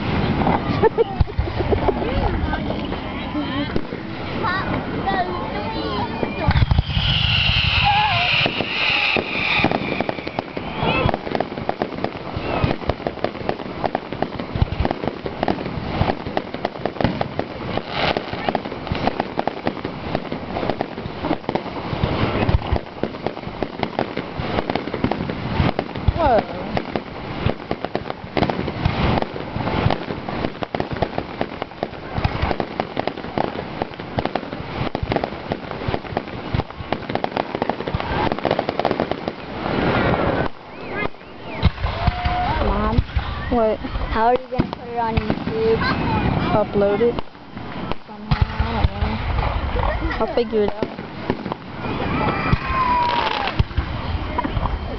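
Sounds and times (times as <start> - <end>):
deep fireworks booms: 0.0 - 54.9
fireworks bangs and pops: 0.0 - 54.9
falling firework whistle: 6.0 - 13.0, 39.3 - 43.6, 51.2 - 54.9.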